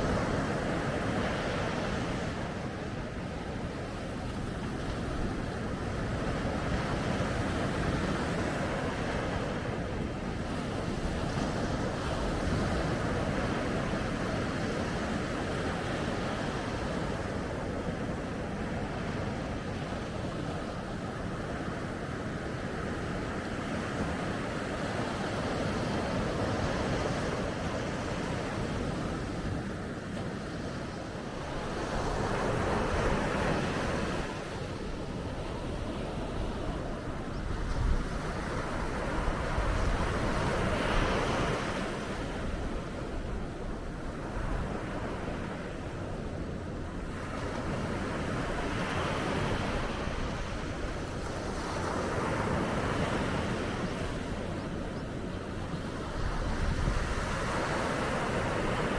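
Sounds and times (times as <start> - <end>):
ocean waves washing onto beach: 0.0 - 58.9
wind rumble on microphone: 22.9 - 58.9.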